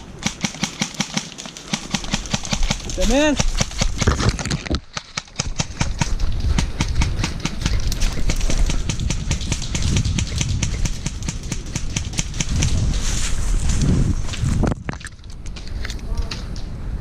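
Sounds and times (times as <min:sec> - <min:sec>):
low rumble on microphone: 0:05.9 - 0:17.0
footsteps crunching dry leaves: 0:12.7 - 0:14.6.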